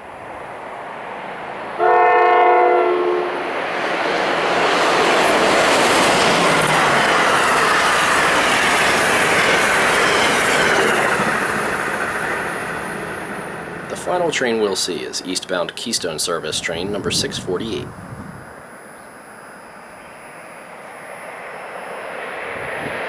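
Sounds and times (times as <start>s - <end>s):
train passing at speed: 0.0s - 23.0s
locomotive horn blast: 1.8s - 3.5s.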